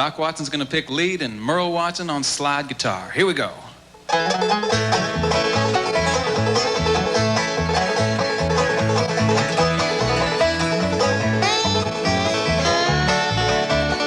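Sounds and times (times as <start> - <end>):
alternating bass rhythm: 4.1 - 14.0
clawhammer banjo: 4.1 - 14.0
picked guitar: 4.1 - 14.0.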